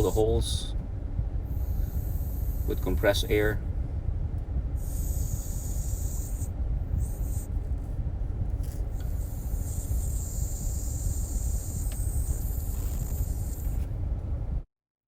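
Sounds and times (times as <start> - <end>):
low rumble: 0.5 - 14.7
compressed gas duster hissing: 1.5 - 3.0, 4.8 - 7.6, 8.6 - 13.9.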